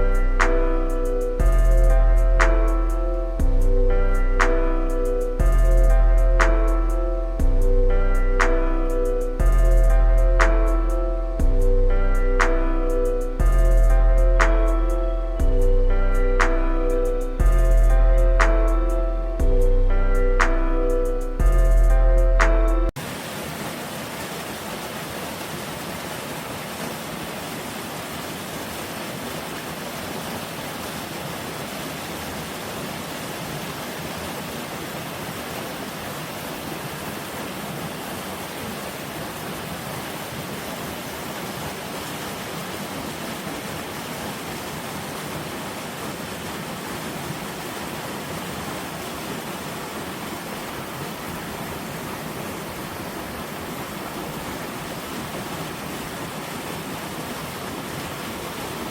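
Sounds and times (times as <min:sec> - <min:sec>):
stream rushing over rocks: 0:23.0 - 0:58.9.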